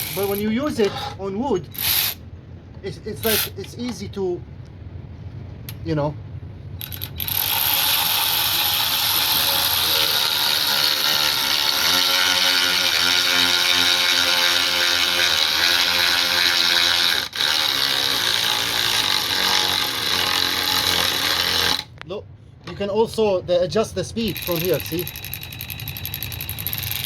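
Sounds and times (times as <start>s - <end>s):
electric ratchet wrench whining: 0.0s - 0.5s, 1.7s - 2.2s, 6.8s - 21.9s, 24.2s - 27.0s.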